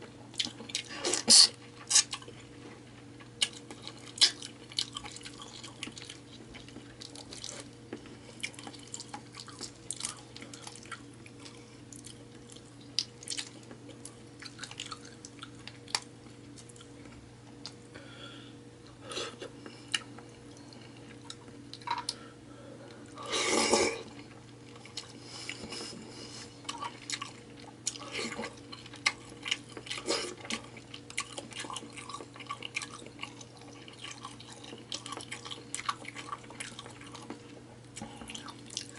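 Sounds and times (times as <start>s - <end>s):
steady low hum: 0.0s - 38.9s
person chewing wetly: 0.3s - 2.5s, 3.2s - 17.0s, 19.9s - 22.2s, 24.0s - 38.9s.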